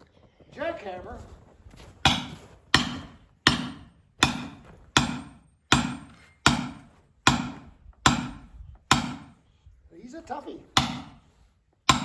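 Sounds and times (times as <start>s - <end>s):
maul striking steel wedge: 2.0s - 9.4s, 10.8s - 12.0s.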